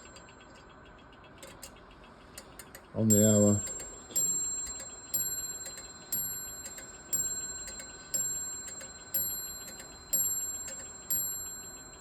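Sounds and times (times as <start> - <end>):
clock ticking softly: 0.0 - 12.0
mantel clock striking: 2.6 - 12.0.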